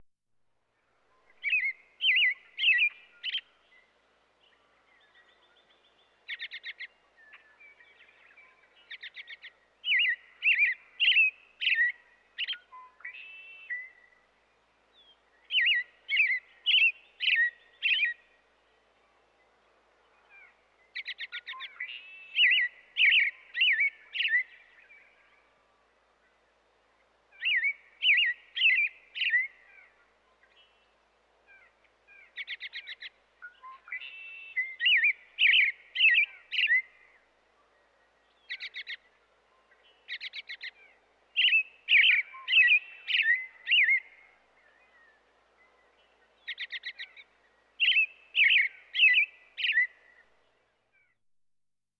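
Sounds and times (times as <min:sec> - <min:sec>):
robin singing warbled phrases: 0:01.3 - 0:03.6, 0:05.0 - 0:14.2, 0:15.4 - 0:18.3, 0:20.4 - 0:25.3, 0:27.3 - 0:30.8, 0:31.5 - 0:50.3.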